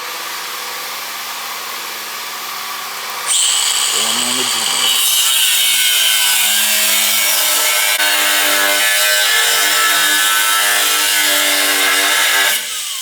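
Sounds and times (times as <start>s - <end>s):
power tool grinding metal: 3.2s - 13.0s.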